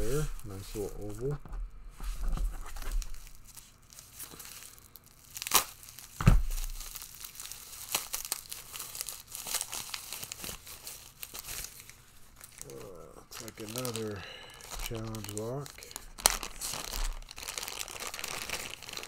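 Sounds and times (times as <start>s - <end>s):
packaging crinkling and tearing: 2.1s - 19.0s
thump: 6.2s - 6.8s.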